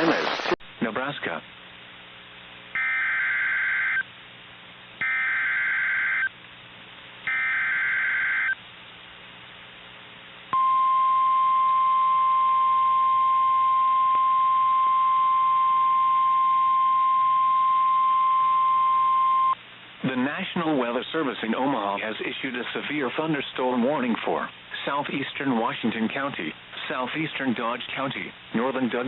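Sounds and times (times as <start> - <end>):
steady warning alarm tone: 2.8 - 4.0, 5.0 - 6.3, 7.3 - 8.6.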